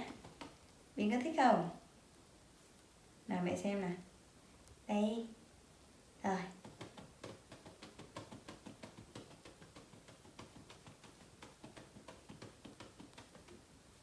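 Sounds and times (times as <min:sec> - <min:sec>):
hand patting a back: 0:06.5 - 0:13.7.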